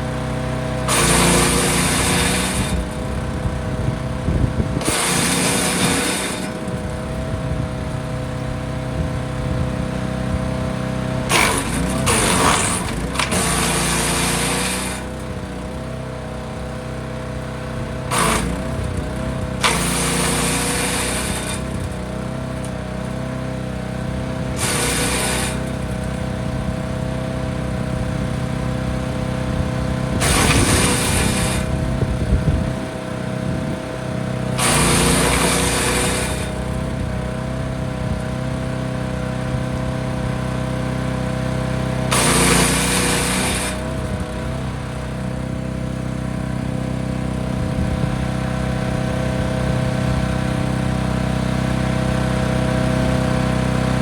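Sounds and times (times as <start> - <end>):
wood chipper engine running: 0.0 - 54.0
branches being chipped: 11.3 - 15.1, 24.5 - 25.9, 30.2 - 31.8.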